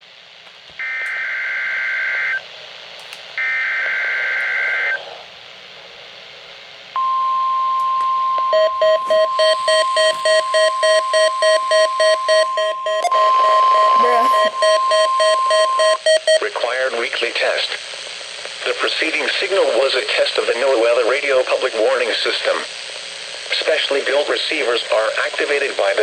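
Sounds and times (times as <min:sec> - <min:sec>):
steady warning alarm tone: 0:07.0 - 0:16.4
rapid electronic alert beeps: 0:08.5 - 0:16.4.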